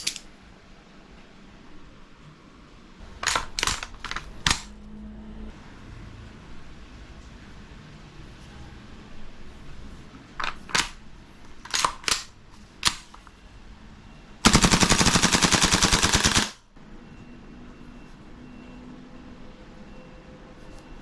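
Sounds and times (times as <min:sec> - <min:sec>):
airsoft gun automatic burst: 0:14.4 - 0:16.6.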